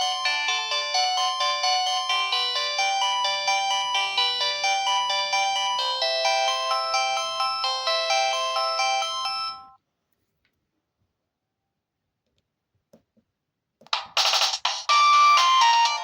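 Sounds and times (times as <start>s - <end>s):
cellphone ringtone melody: 0.0s - 9.8s, 14.9s - 16.0s.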